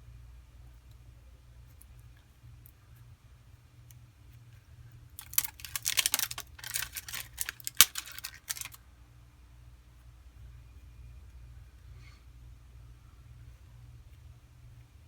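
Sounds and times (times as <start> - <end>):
plastic film crinkling: 5.2 - 8.8.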